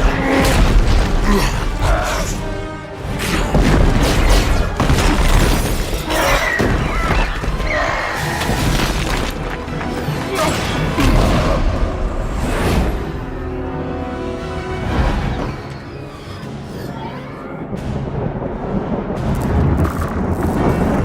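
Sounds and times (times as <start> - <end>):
orchestral score: 0.0 - 21.0
booms and crashing impacts: 3.3 - 9.7.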